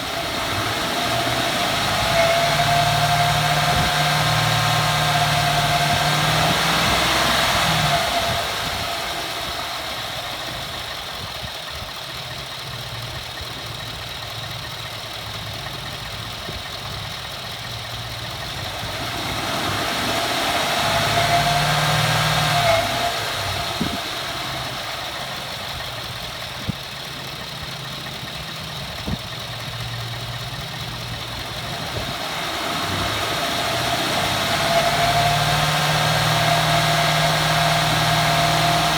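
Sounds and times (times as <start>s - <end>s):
truck engine revving: 0.0s - 38.9s
high wavering squeal: 0.2s - 7.6s.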